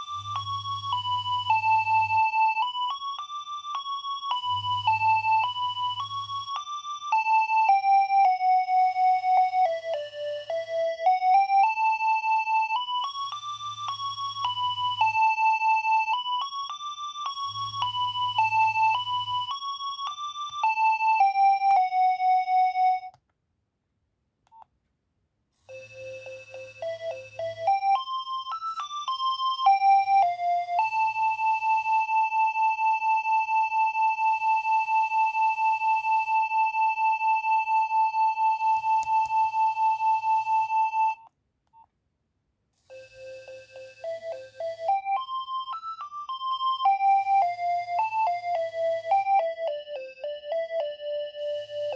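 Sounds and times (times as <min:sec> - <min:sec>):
mobile phone ringtone beeping: 0:00.0 - 0:23.1, 0:25.7 - 0:41.2, 0:42.9 - 0:51.9.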